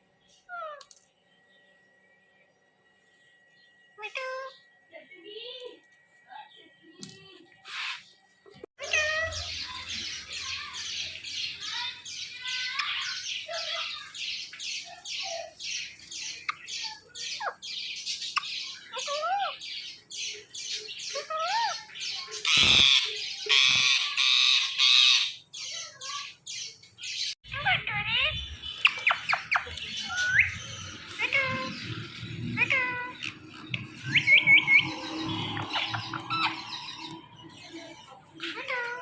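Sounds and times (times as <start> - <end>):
parakeet squawking: 7.7 - 8.1, 21.1 - 26.0, 27.5 - 39.0
whistled bird notes: 28.4 - 38.9.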